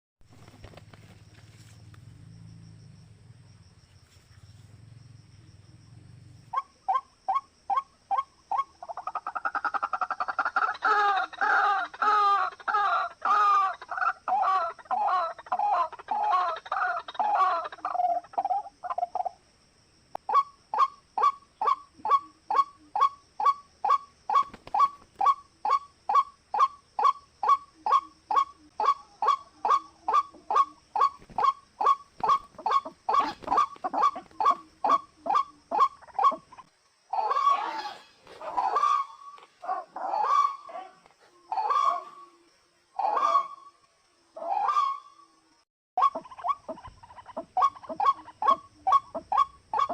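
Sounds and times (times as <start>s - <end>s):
sharp bird calls: 20.3s - 43.8s, 46.0s - 49.9s.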